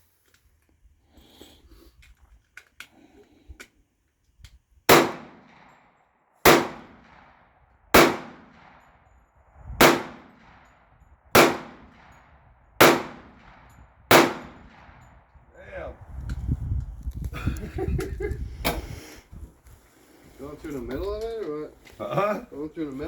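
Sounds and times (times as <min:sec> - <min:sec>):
gun handling clicks: 0:02.0 - 0:05.8
gunshots with echo: 0:04.9 - 0:05.7, 0:06.4 - 0:08.8, 0:09.8 - 0:10.6, 0:11.3 - 0:12.2, 0:12.8 - 0:15.0.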